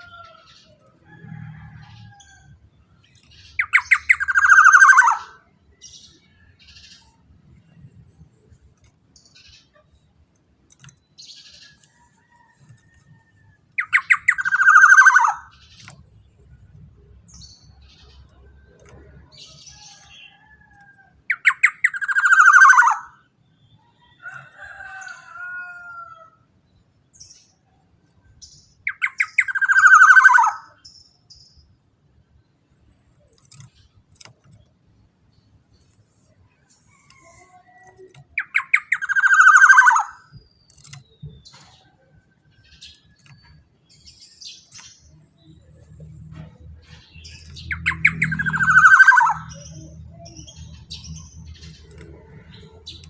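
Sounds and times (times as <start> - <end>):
bird harsh calls: 3.4 - 5.5, 13.8 - 16.0, 37.0 - 41.9, 46.9 - 51.9.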